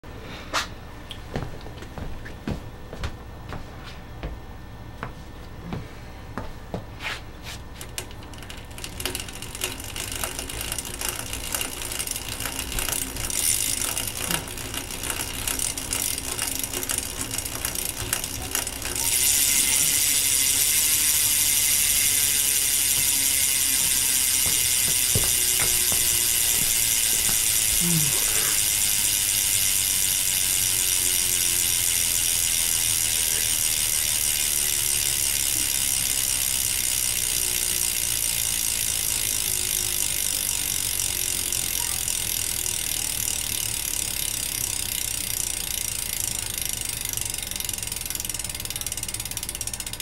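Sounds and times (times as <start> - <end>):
bicycle hub ratcheting: 7.6 - 50.0.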